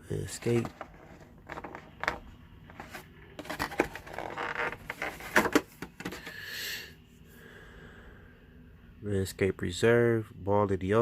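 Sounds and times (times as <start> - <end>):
packaging rustling: 0.4 - 6.3.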